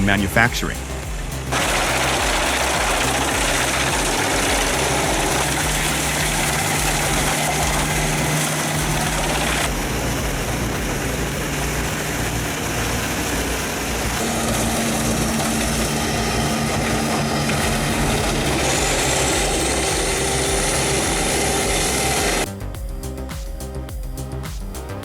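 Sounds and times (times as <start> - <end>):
engine drone: 0.0 - 25.0
steady low hum: 0.0 - 25.0
wood chipper running: 0.8 - 22.5.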